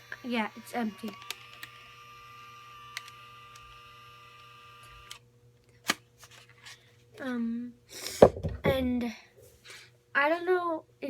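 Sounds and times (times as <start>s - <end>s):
instant camera electronic hum: 0.0s - 5.3s
camera click: 1.0s - 1.9s, 2.9s - 5.2s.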